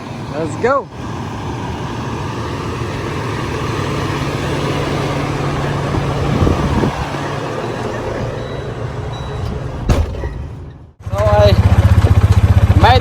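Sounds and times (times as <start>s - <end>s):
truck engine and road noise: 0.0s - 13.0s.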